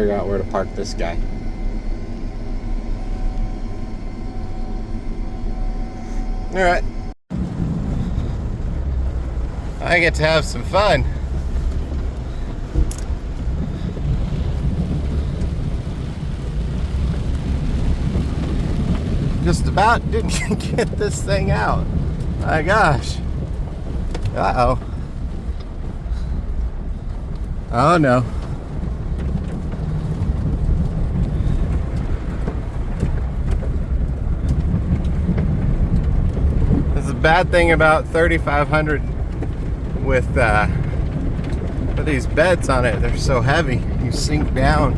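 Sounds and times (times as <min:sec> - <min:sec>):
truck engine rumbling: 0:00.0 - 0:44.9.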